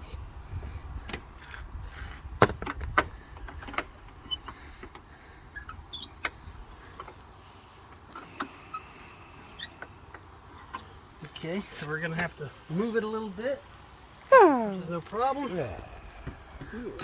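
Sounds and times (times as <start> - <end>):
short high chirps: 14.3 - 14.8.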